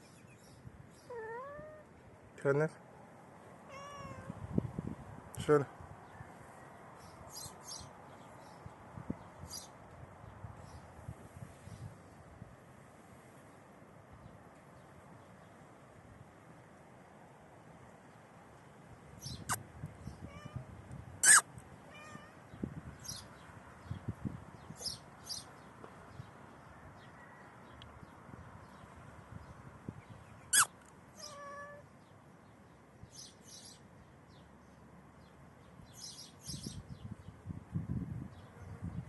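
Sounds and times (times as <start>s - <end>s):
cat meowing faintly: 1.1s - 1.9s, 3.7s - 4.4s, 20.2s - 22.5s, 30.6s - 31.9s
high chirps: 21.2s - 21.4s.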